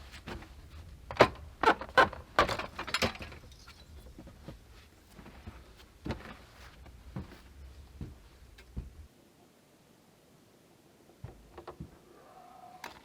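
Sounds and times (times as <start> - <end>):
sharp knocks and clatters: 1.1 - 4.6.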